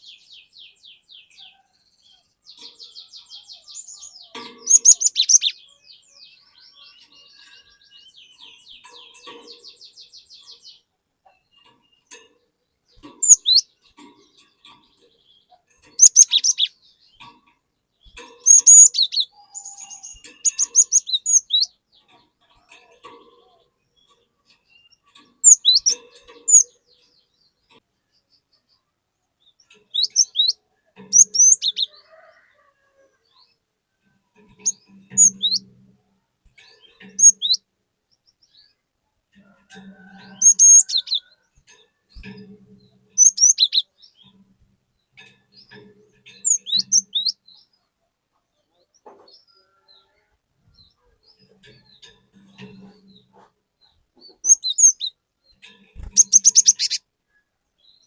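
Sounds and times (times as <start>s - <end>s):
bird singing high sharp notes: 43.1s - 43.9s.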